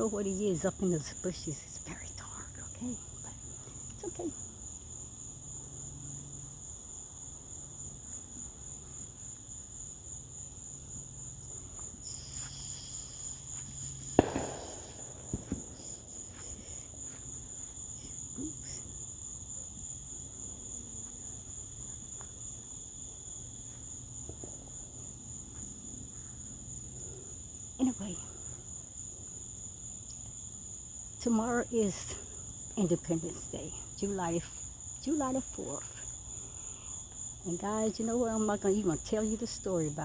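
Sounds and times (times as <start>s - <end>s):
night insects chirping: 0.0s - 40.0s
small pops: 11.8s - 17.2s
firework bang: 14.0s - 16.6s.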